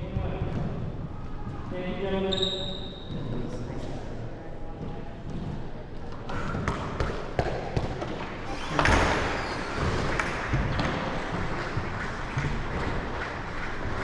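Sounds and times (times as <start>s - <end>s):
ball smacking off paddles and walls: 6.3s - 14.0s.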